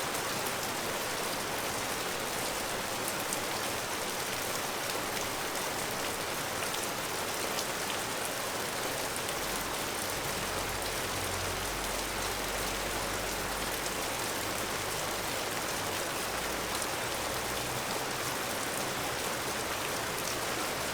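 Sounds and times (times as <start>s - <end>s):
steady rain falling: 0.0s - 20.9s.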